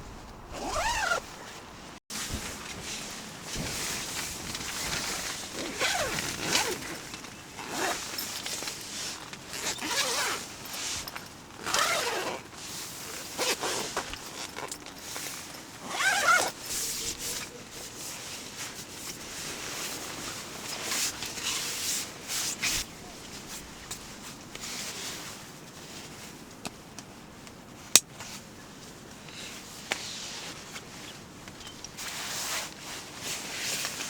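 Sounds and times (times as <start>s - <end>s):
rasping rustle: 0.0s - 25.4s.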